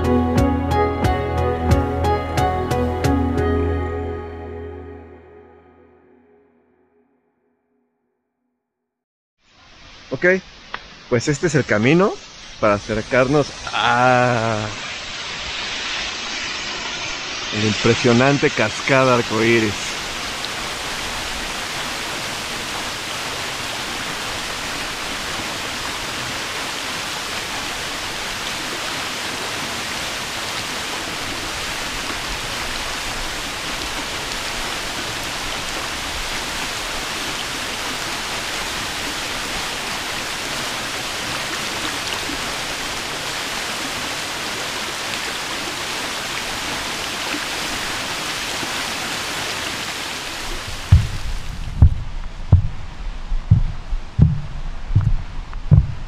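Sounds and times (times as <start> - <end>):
waterfall rushing: 12.6 - 52.9.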